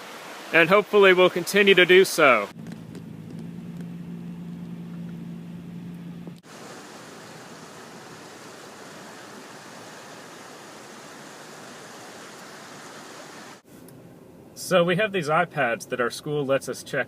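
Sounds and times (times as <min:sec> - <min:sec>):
river rushing: 0:00.0 - 0:02.6, 0:06.4 - 0:13.6
low steady hum: 0:02.2 - 0:11.1.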